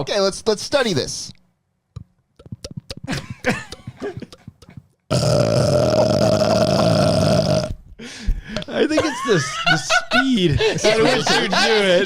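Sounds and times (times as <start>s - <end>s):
man swallowing air: 2.4s - 7.8s
man burping loudly: 5.1s - 7.8s.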